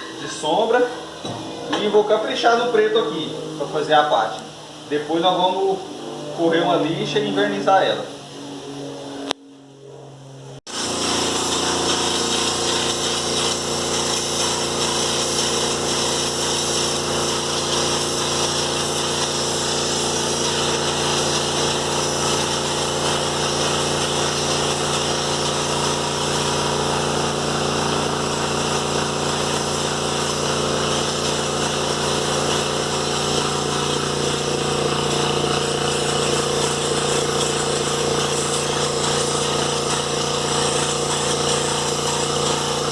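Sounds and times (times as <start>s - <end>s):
air compressor running: 0.0s - 9.8s, 10.4s - 42.9s
paint spray gun hissing: 10.7s - 42.9s.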